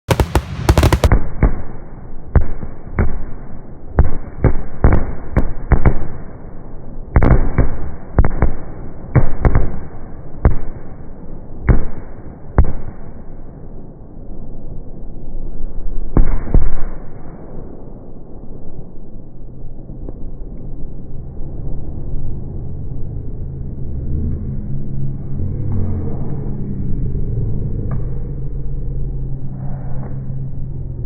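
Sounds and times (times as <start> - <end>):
fireworks rumble: 0.0 - 13.4
fireworks shells bursting: 0.1 - 1.6.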